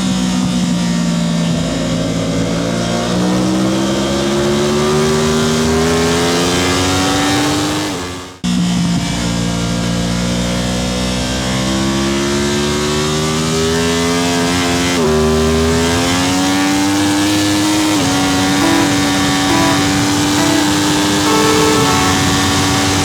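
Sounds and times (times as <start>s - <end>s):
motorcycle engine accelerating: 17.9s - 23.0s.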